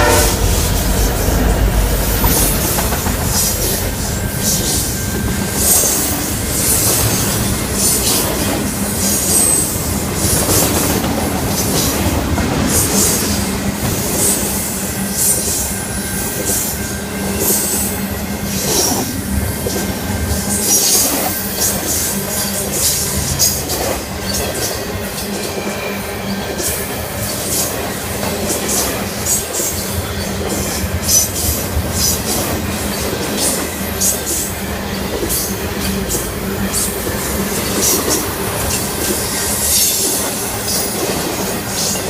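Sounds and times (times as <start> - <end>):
high wheel squeal: 0.0 - 10.0
rail clicks: 0.0 - 42.0
train wheels rumbling on rail: 0.0 - 42.0.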